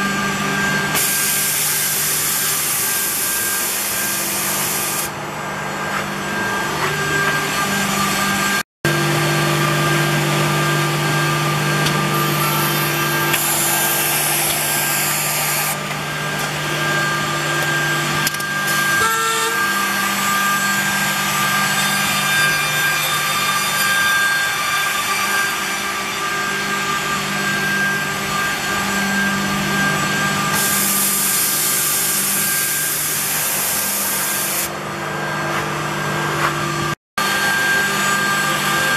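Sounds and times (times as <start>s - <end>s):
machine motors humming: 0.0s - 38.9s
cutting units hissing: 0.9s - 5.2s, 11.8s - 17.9s.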